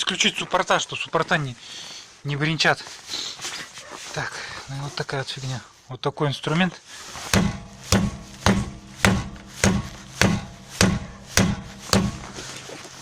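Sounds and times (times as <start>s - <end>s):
hand tool knocking on wheel: 7.3s - 12.6s.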